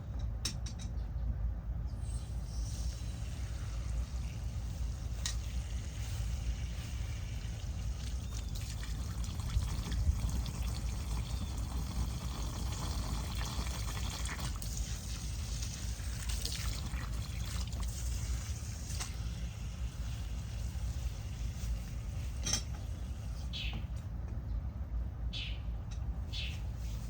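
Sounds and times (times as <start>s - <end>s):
water pouring into pump: 2.2s - 22.4s.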